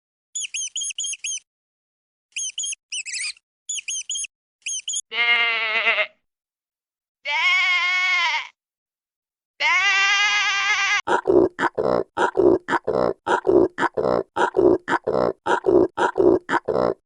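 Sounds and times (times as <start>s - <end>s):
high-pitched squeaks: 0.4s - 1.4s, 2.3s - 5.1s
sheep bleating: 5.1s - 6.2s, 7.2s - 8.6s, 9.6s - 11.1s.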